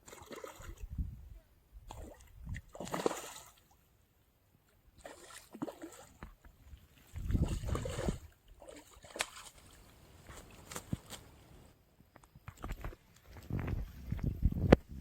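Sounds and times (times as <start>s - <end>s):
water sloshing and splashing: 0.0s - 1.0s, 1.9s - 3.8s, 5.0s - 11.7s.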